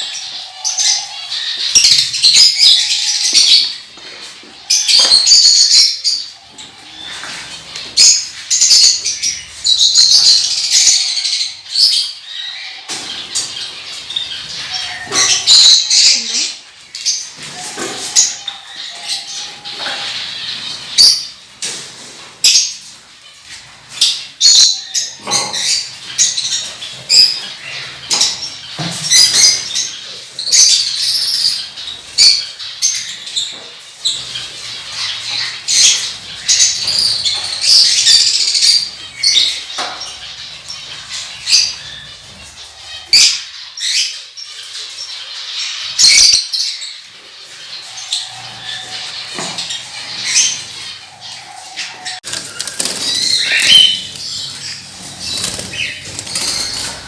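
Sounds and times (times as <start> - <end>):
parrots chirping: 4.5 - 21.3, 24.0 - 57.0
wings fluttering: 52.2 - 57.0.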